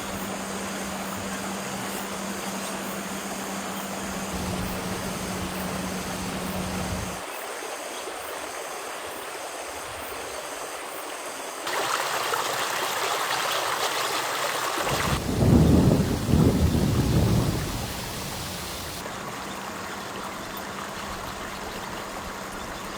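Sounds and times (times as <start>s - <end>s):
rain hissing: 0.0s - 7.2s, 14.8s - 21.0s.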